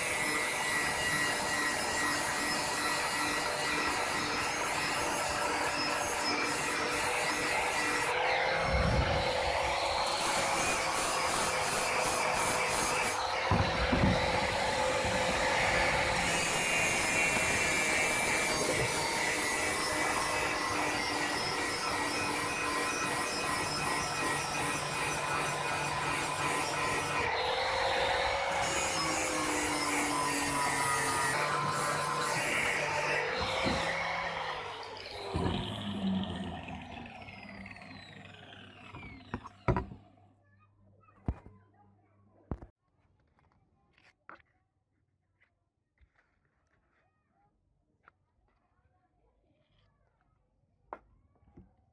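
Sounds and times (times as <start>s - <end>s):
abrasive sanding or filing: 0.0s - 34.6s
power tool motor winding down: 0.0s - 39.9s.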